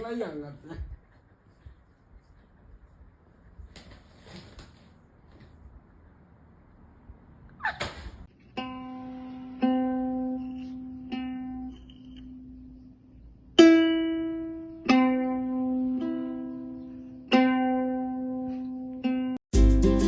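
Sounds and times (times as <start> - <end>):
plucked string notes: 8.5 - 12.7, 13.6 - 20.0
busy music with deep bass: 19.5 - 20.0.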